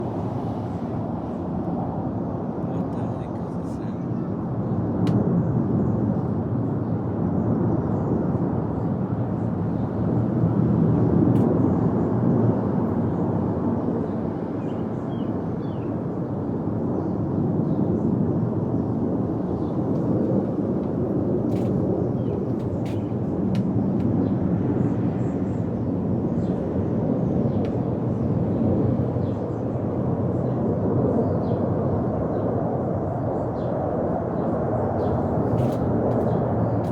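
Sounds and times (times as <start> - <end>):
loud low rumble overhead: 0.0 - 36.9.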